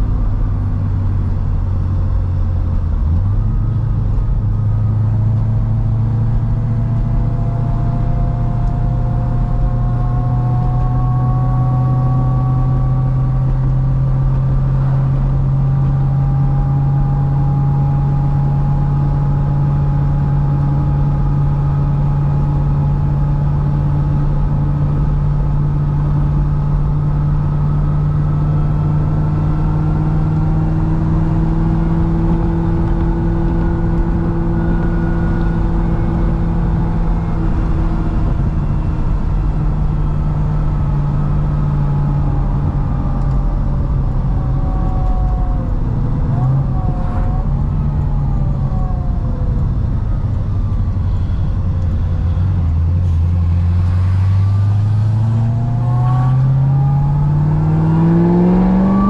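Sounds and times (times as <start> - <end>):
car engine cruising: 0.0 - 59.0
road noise: 0.0 - 59.0.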